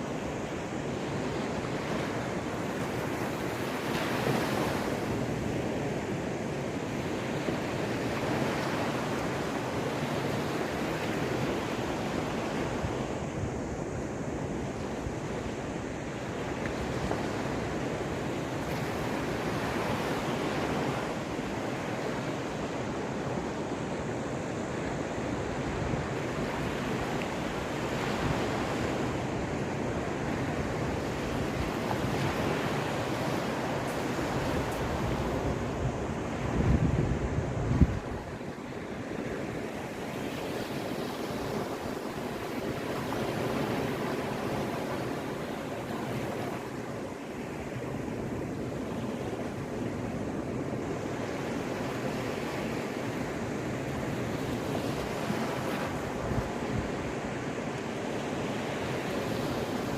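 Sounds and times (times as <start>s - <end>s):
waves washing ashore: 0.0s - 59.9s
wind buffeting microphone: 22.6s - 45.0s.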